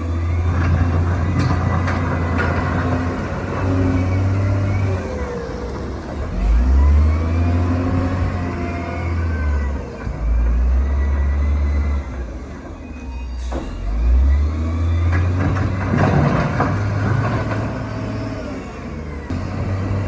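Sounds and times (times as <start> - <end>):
bulldozer engine under load: 0.0 - 20.0
rattling and clanking: 15.0 - 18.0.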